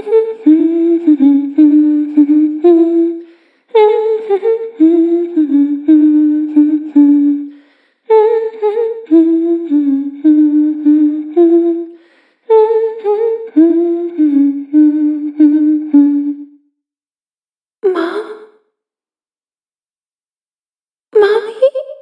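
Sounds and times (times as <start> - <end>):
girl humming creepy tune: 0.0 - 16.6, 17.8 - 18.6.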